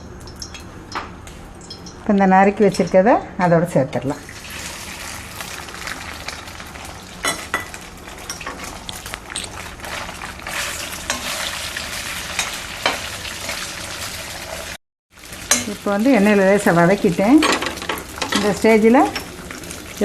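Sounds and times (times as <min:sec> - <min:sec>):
food sizzling in hot oil: 0:04.2 - 0:20.0.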